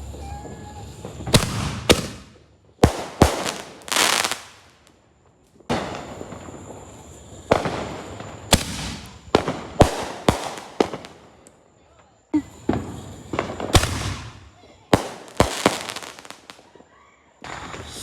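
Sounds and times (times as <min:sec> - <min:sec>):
firework hissing burst: 0:00.0 - 0:04.9, 0:05.7 - 0:11.4, 0:12.4 - 0:16.7, 0:17.5 - 0:18.0
fireworks bangs: 0:00.0 - 0:11.5, 0:12.4 - 0:18.0.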